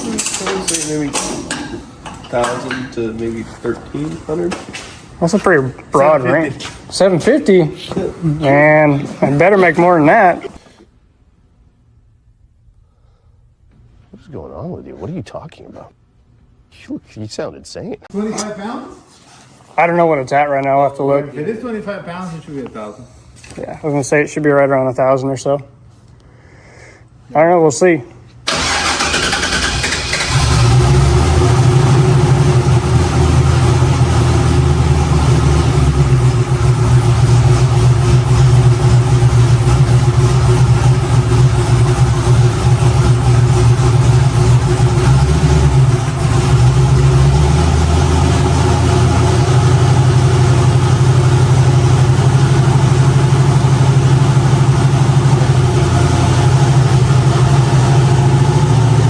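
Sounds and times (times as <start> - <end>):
car engine idling: 28.5 - 59.0.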